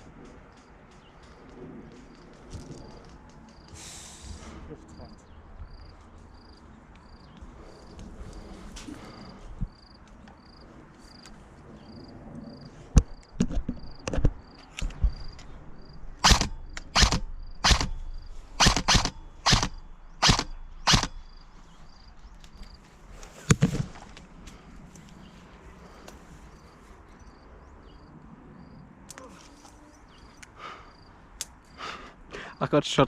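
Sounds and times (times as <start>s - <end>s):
crickets chirping: 0.0s - 33.0s
sharp cracks: 16.1s - 21.6s.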